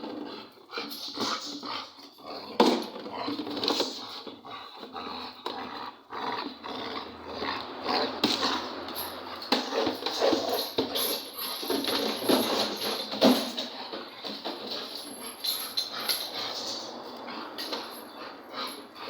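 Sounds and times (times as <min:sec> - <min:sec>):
dog scuffling: 0:07.1 - 0:19.0.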